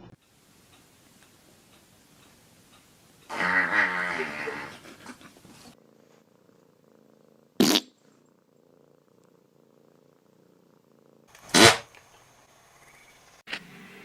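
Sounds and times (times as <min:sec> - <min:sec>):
cat purring softly: 0:04.2 - 0:11.3.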